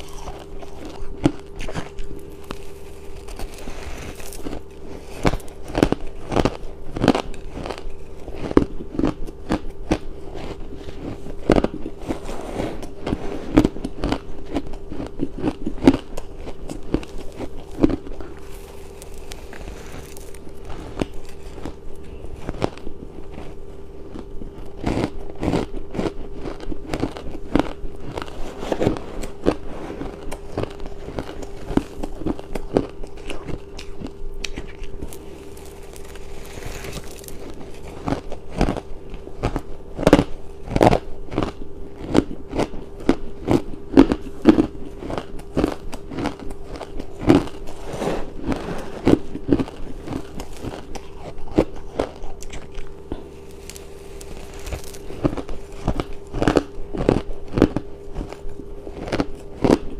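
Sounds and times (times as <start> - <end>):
person crunching ice: 0.0 - 59.9.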